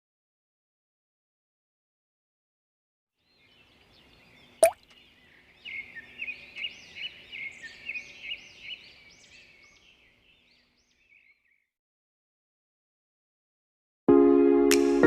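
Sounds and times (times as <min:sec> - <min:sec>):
bird chirping: 0:03.2 - 0:11.7.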